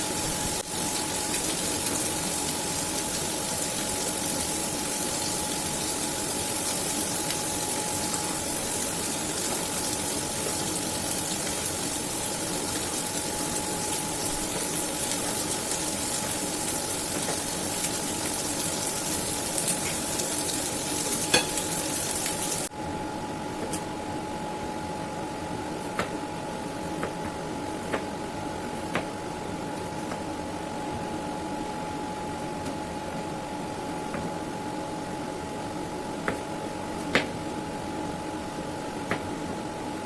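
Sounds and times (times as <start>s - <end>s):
food sizzling in a pan: 0.0s - 22.7s.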